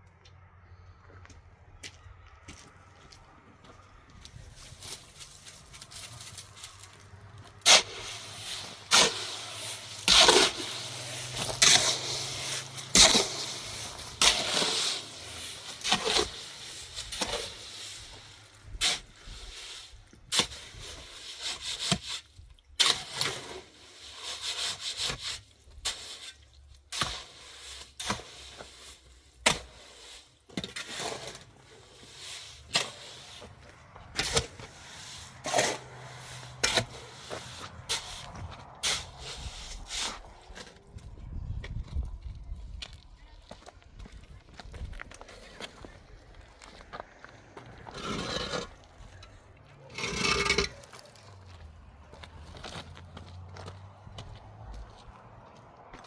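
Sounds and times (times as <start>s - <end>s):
tools scraping and rubbing: 4.5s - 26.4s, 29.5s - 40.8s, 47.7s - 51.2s.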